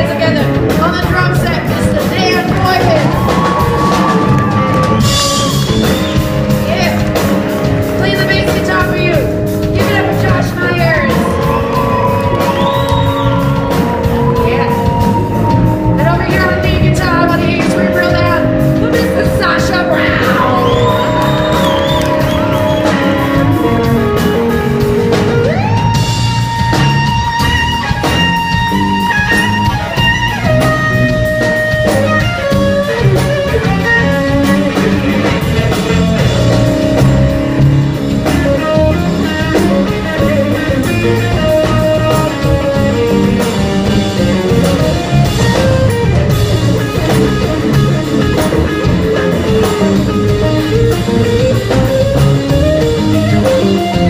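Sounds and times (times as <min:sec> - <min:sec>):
electric guitar: 0:00.0 - 0:54.0
live band playing: 0:00.0 - 0:54.0.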